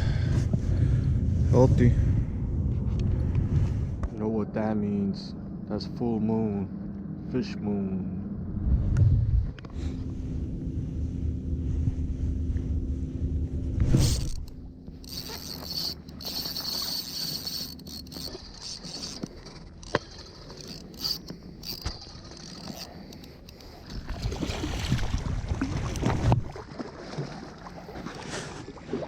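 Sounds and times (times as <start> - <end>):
surf water sloshing and lapping: 13.8 - 29.0
water splashing: 23.6 - 29.0.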